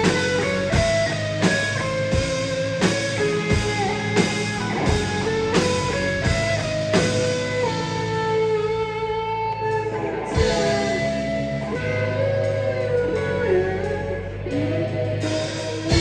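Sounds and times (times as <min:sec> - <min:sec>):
bass line: 0:00.0 - 0:16.0
electric guitar lead notes: 0:00.0 - 0:16.0.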